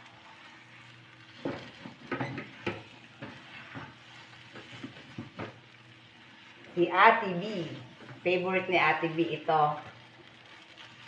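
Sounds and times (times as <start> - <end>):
faint sizzle from pan: 0.0 - 11.0
spatula scraping rice in a pan: 0.0 - 11.0.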